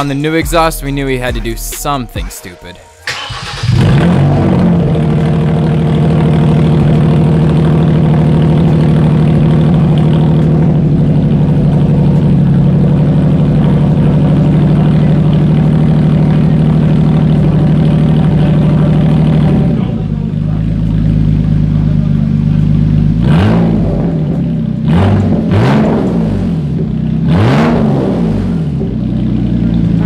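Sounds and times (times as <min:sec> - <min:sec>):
car engine starting and idling: 0:00.0 - 0:30.0.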